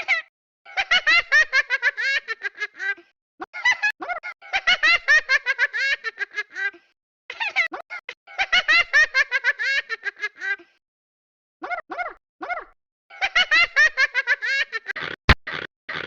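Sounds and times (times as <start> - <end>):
baby giggling: 1.8 - 6.7, 11.6 - 16.0.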